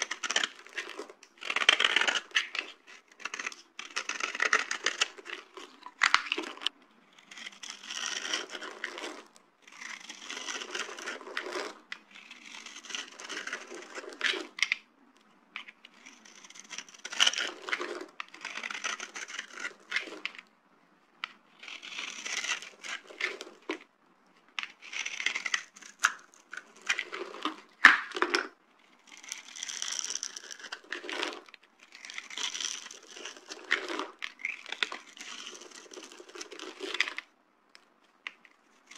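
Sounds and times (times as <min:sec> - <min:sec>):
soap cubes crushed by hand: 0:00.0 - 0:06.7, 0:24.8 - 0:31.4, 0:32.0 - 0:37.2.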